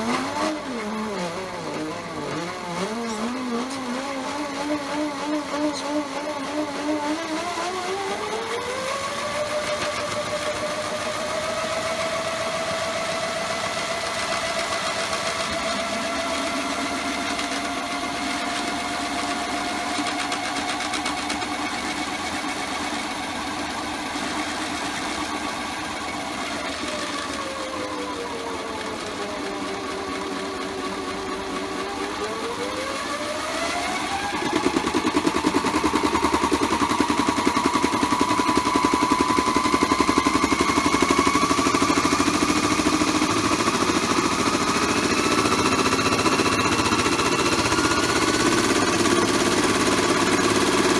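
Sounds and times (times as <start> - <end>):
small electric motor whining: 0.0 - 50.9
machine vibrating rattle: 29.9 - 50.9.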